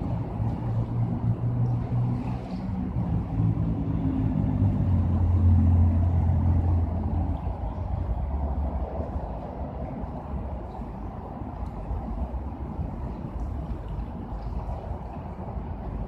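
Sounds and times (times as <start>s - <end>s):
engine humming: 0.0s - 10.3s.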